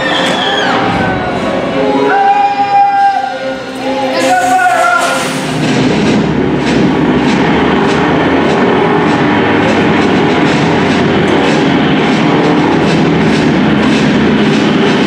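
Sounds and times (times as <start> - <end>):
rail vehicle rumbling: 0.0 - 15.0
wheels clacking on track: 4.2 - 15.0.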